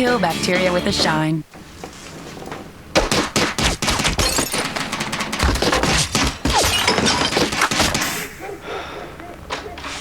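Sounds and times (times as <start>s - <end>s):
clatter of objects striking: 3.0s - 8.1s.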